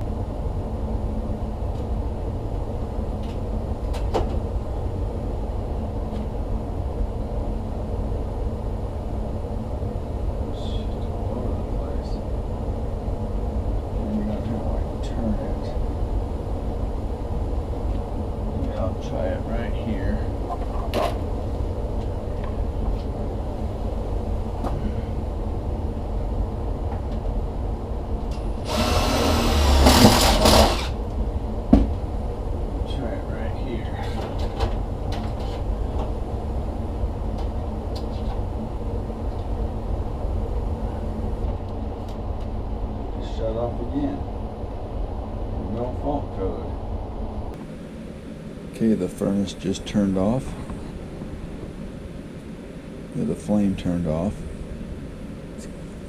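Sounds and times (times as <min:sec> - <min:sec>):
furnace blower rumbling: 0:00.0 - 0:56.0
loud harsh noise: 0:28.4 - 0:31.1.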